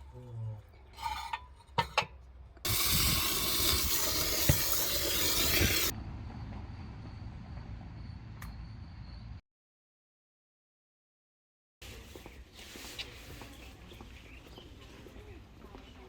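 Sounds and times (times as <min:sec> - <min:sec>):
water pouring: 0:02.7 - 0:05.9.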